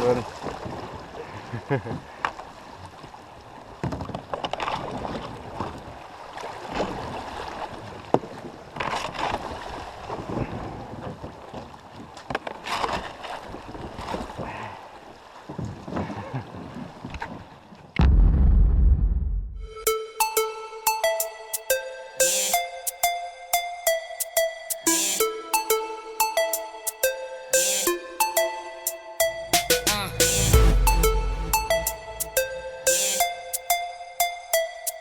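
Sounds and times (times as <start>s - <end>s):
paddle strokes splashing: 2.1s - 17.6s
loud music: 19.3s - 35.0s.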